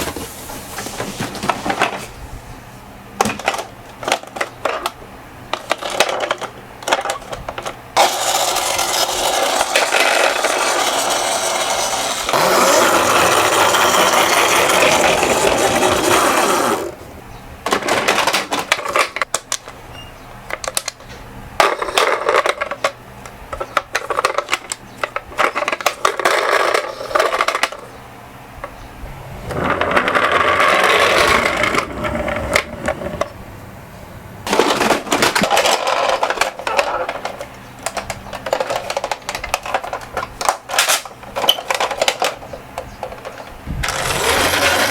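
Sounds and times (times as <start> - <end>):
small cars clattering: 3.2 - 16.9, 23.6 - 28.0, 29.4 - 33.4, 34.5 - 44.9
toy cars rolling rattle: 3.4 - 17.0, 21.6 - 23.0, 23.9 - 27.9, 29.5 - 33.3, 34.5 - 44.9.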